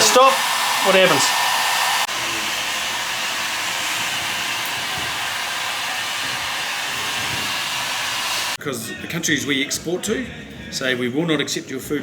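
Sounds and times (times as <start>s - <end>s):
steady rushing hiss: 0.0s - 8.6s.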